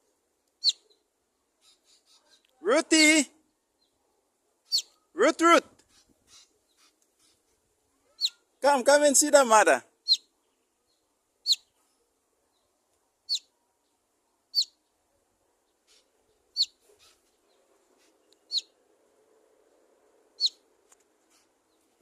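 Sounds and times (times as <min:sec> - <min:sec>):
bird sharp chirps: 0:00.6 - 0:02.4, 0:04.6 - 0:05.2, 0:05.8 - 0:08.6, 0:10.0 - 0:12.0, 0:13.2 - 0:13.5, 0:14.5 - 0:14.9, 0:15.8 - 0:18.8, 0:20.4 - 0:20.6.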